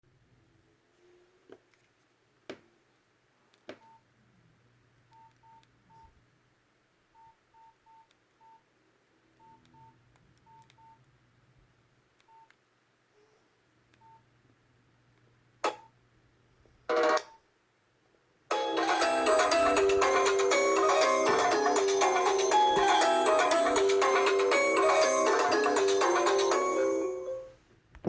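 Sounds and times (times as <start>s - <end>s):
keypad beeps: 9.4s - 11.0s, 12.3s - 12.5s.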